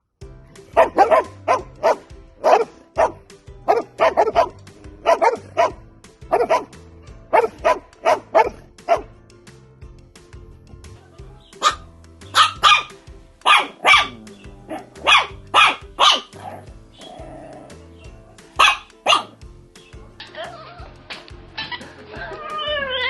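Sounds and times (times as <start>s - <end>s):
background music with bass: 0.0s - 23.0s
dog barking loudly: 0.8s - 6.7s, 7.3s - 9.1s, 11.6s - 16.7s, 18.6s - 19.4s.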